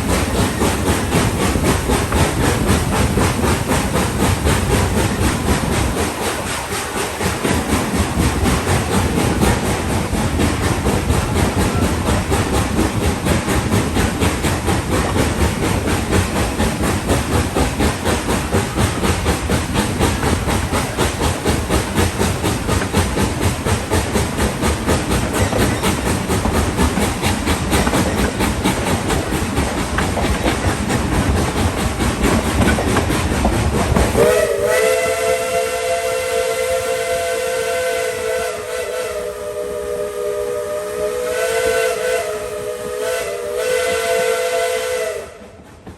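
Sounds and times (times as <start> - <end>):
steam train rhythmic clatter: 0.0 - 45.9
steam whistle: 34.1 - 45.6.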